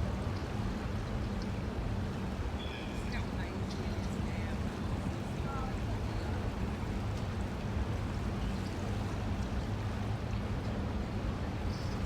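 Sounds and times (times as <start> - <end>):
wind and water rushing: 3.3 - 12.0.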